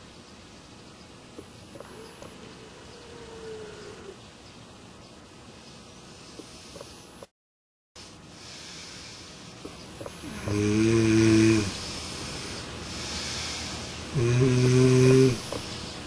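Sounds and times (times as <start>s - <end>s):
breathing: 6.1s - 7.0s, 8.0s - 9.6s, 11.8s - 14.1s
person snoring: 10.1s - 15.8s.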